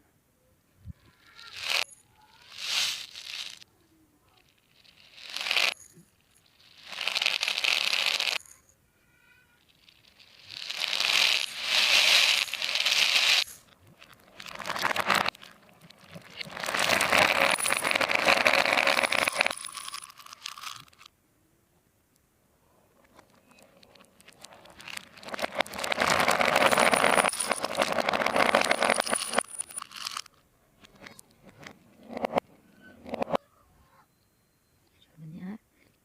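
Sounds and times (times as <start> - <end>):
plastic and cardboard crinkling: 9.6 - 21.1, 23.0 - 32.4.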